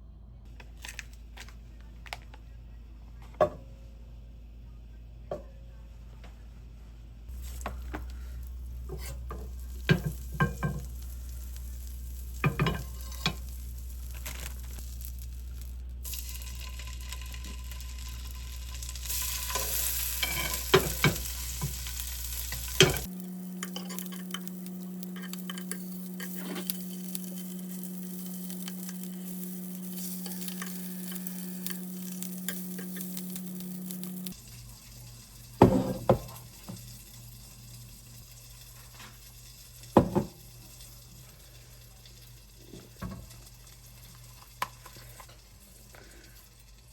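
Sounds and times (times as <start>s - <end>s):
steady low hum: 1.2s - 38.6s
roe sizzling in a pan: 7.3s - 46.9s
utensils knocking on pan: 8.9s - 10.9s, 12.4s - 13.4s, 20.2s - 21.8s, 22.5s - 26.6s, 35.6s - 36.8s.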